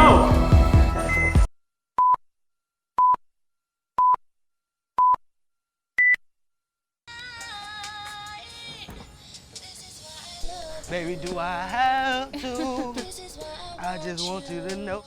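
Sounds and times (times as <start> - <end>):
music: 0.0 - 1.5, 7.1 - 15.0
short electronic beeps: 1.1 - 1.4.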